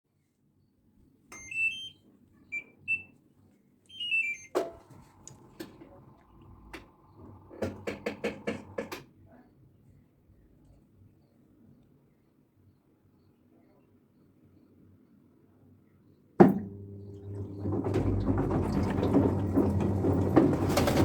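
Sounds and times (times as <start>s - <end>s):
electronic beeps: 1.4s - 3.1s, 3.9s - 4.7s.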